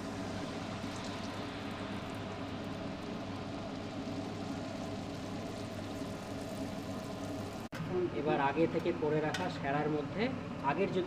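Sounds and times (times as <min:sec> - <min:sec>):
batter sizzling in hot oil: 0:00.0 - 0:08.5.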